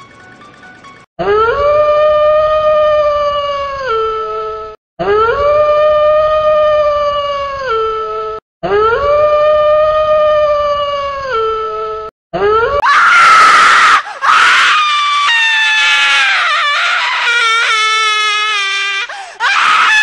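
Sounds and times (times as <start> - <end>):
person screaming: 12.4 - 20.0.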